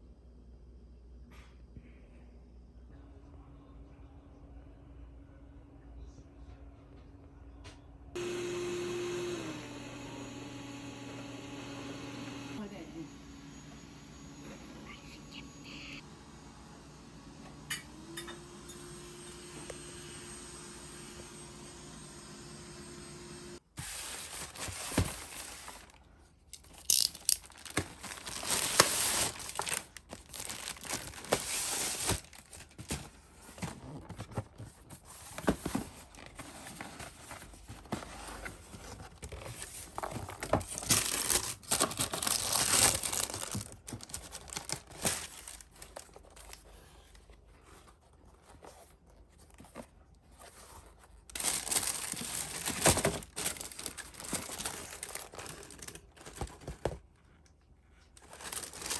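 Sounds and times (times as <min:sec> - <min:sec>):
packaging crinkling and tearing: 0:23.8 - 0:33.2, 0:37.6 - 0:46.9, 0:50.6 - 0:57.0, 0:58.2 - 0:58.9.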